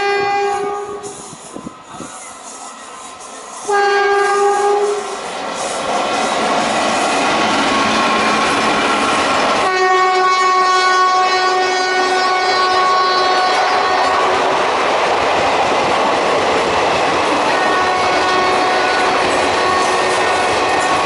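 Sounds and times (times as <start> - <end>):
locomotive horn blast: 0.0 - 1.2, 3.6 - 5.2, 9.6 - 14.4, 17.5 - 21.0.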